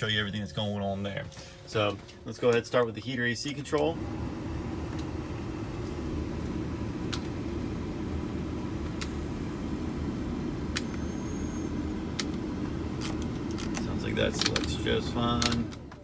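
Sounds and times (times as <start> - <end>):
blower fan running: 0.7 - 16.0.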